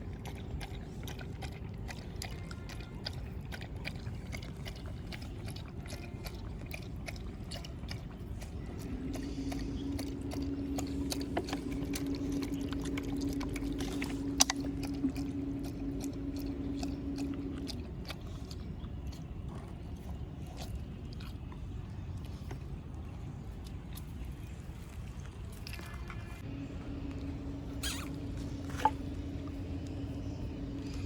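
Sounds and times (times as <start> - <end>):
dogs chewing food: 0.0 - 31.0
steady low hum: 0.0 - 31.0.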